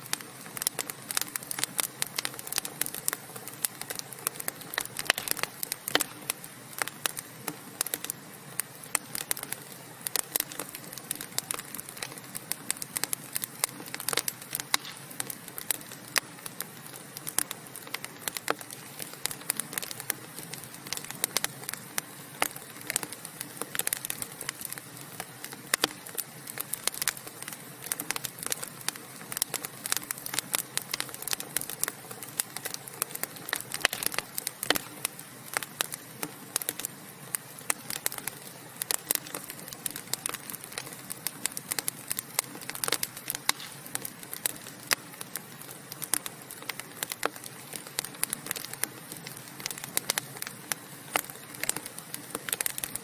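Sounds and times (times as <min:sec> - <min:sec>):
wood fire crackling and popping: 0:00.0 - 0:53.0.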